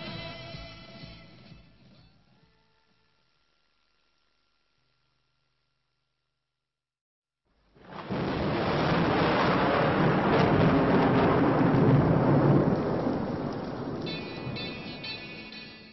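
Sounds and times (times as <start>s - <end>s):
heavy rain: 7.7s - 15.5s
thunder rumbling: 7.8s - 15.4s
musical notes: 14.0s - 15.9s.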